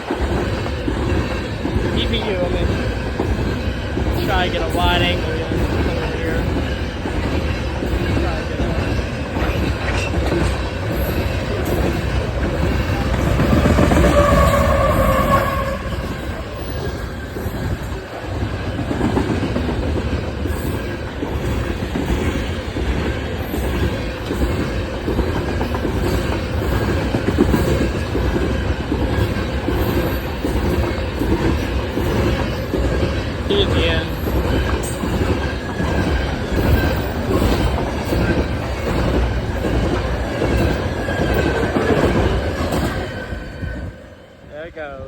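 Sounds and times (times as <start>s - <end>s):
train wheel squeal: 0.0s - 45.0s
train wheels on rails: 0.0s - 45.0s.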